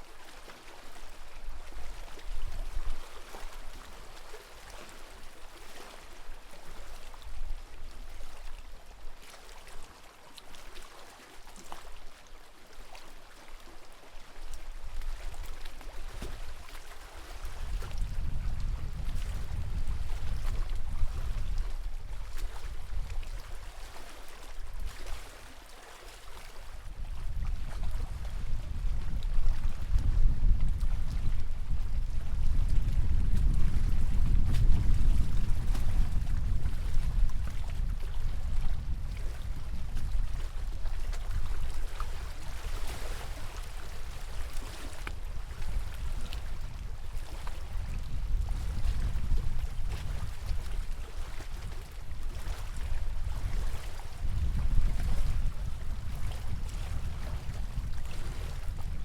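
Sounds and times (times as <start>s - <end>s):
lake water lapping: 0.0s - 59.0s
wind buffeting microphone: 17.5s - 23.5s, 26.9s - 41.8s, 42.6s - 59.0s.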